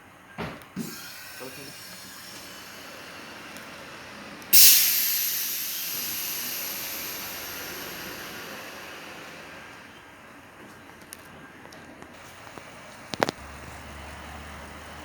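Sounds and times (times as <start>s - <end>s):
air suspension hissing: 0.7s - 10.1s.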